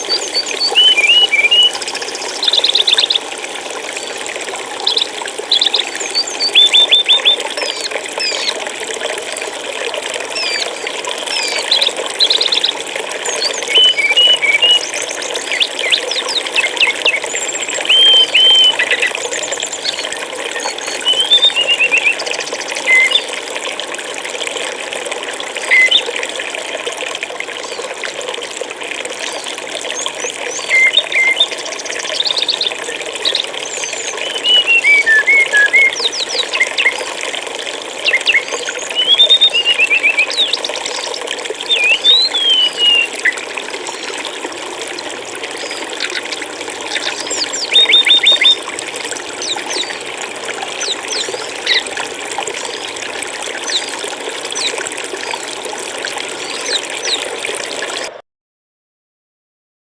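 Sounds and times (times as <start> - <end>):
songbird chirps and trills: 0.0 - 3.2, 4.8 - 8.6, 11.3 - 23.3, 30.0 - 37.0, 38.0 - 43.4, 45.6 - 48.6
flowing water: 0.0 - 58.2.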